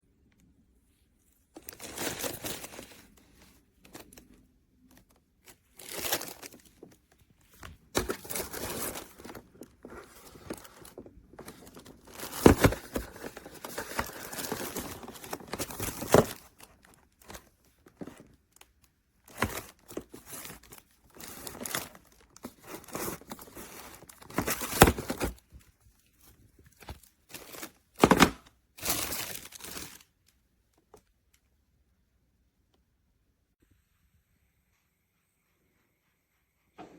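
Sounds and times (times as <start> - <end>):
packaging crinkling and tearing: 1.6 - 7.0, 7.9 - 25.4, 26.7 - 30.4.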